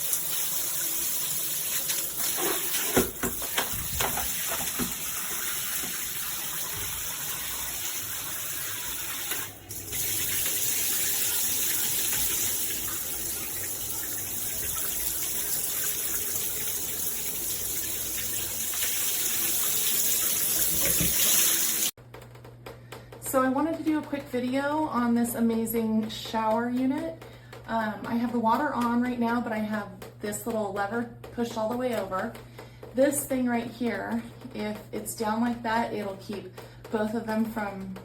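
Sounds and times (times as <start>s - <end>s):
shower water running: 0.0s - 22.0s.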